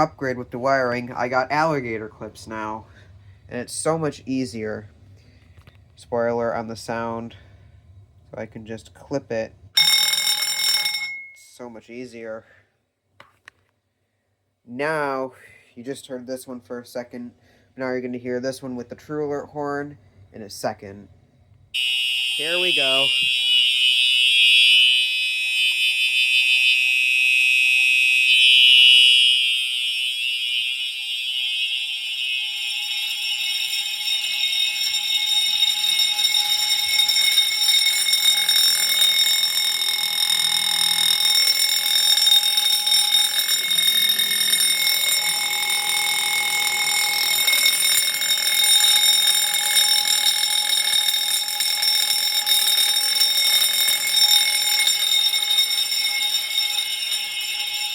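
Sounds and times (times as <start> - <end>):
fire alarm bell ringing: 0.0 - 4.8, 9.8 - 11.7, 21.7 - 57.9
fire alarm horn blaring: 9.8 - 11.1, 21.7 - 57.9.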